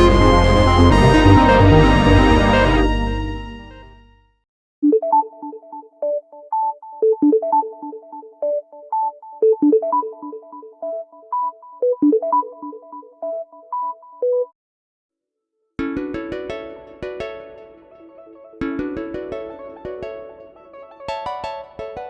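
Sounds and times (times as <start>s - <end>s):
synthesized ringtone melody: 0.0s - 3.9s, 4.8s - 14.0s.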